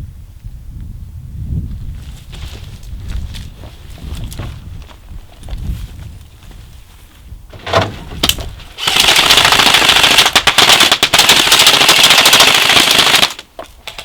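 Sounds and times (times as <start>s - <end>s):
airsoft gun full-auto rattle: 7.7s - 14.0s.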